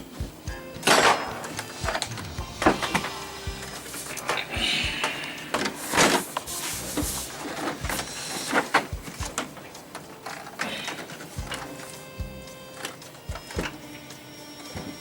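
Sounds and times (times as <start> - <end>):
knocks and scraping of tv handling: 4.0 - 12.0, 12.8 - 13.8.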